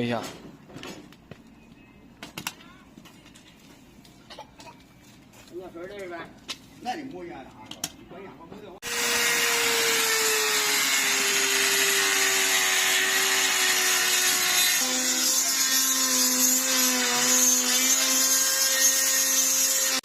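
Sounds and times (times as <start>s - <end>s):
electric hand grinder grinding: 8.8s - 20.0s.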